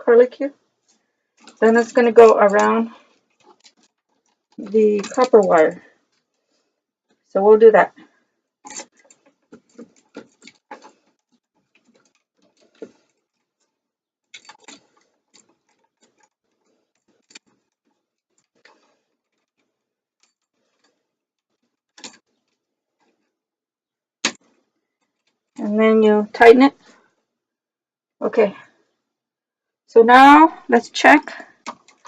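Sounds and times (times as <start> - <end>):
pliers and wire clicking: 0.8 - 6.4, 8.6 - 23.3, 31.5 - 32.0.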